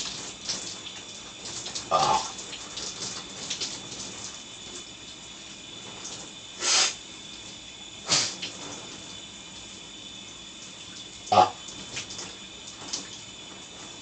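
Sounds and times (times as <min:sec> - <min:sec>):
shower water running: 0:00.0 - 0:14.0
loud burps: 0:01.9 - 0:02.4, 0:11.3 - 0:11.6.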